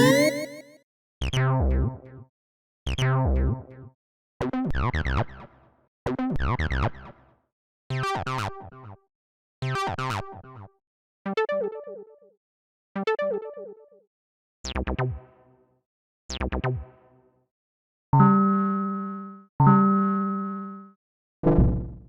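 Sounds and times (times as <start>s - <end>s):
synthesized interface sound effects: 0.0s - 0.7s.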